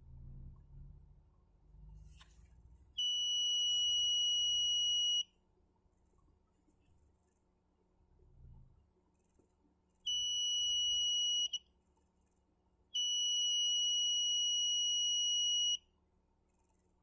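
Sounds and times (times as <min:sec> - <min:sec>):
alarm buzzer high-pitched tone: 0:10.1 - 0:11.6.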